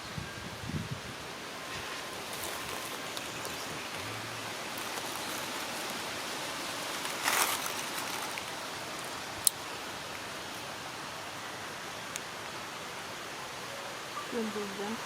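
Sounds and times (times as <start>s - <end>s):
steady outdoor hiss: 0.0s - 15.0s.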